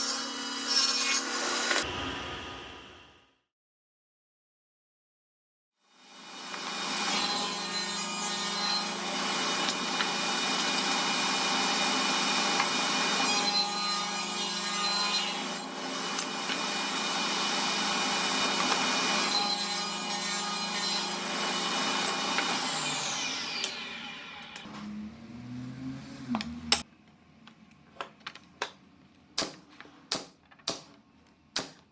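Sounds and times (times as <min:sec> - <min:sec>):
electric saw cutting wood: 0:00.0 - 0:02.0, 0:05.9 - 0:26.8.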